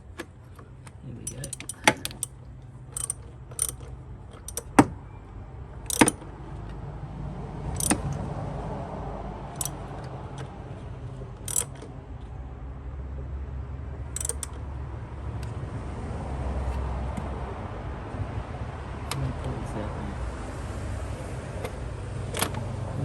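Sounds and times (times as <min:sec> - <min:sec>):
metal tools clinking: 0:01.2 - 0:02.3.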